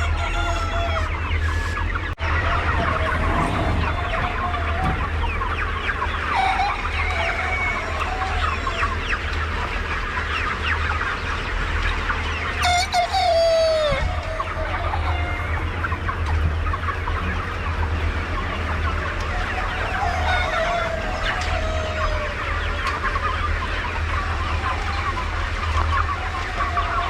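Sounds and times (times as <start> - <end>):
rooster crowing: 0.0 - 1.8, 6.3 - 9.0, 12.6 - 15.6, 19.3 - 22.5
chickens clucking: 0.0 - 27.0.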